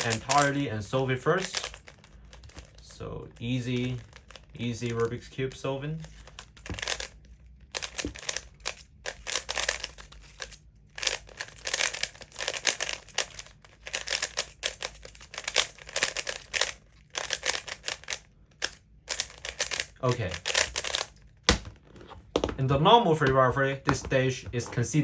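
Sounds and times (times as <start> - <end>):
puzzle cube clicking: 6.1 - 21.7.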